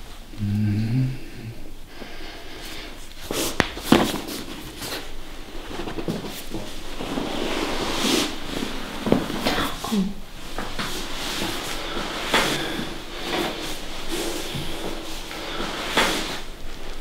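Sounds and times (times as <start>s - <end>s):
person grunting: 0.4s - 1.7s.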